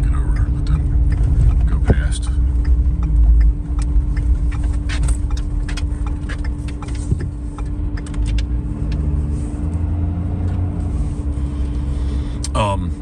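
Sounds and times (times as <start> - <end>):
constant hum: 0.0 - 13.0
engine and road rumble: 0.0 - 13.0
sharp ticks and crackles: 0.1 - 8.5.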